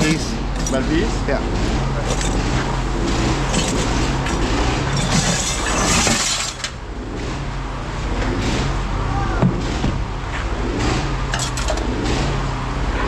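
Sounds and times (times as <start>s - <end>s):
scrap metal clattering: 0.0s - 6.8s, 11.3s - 12.0s.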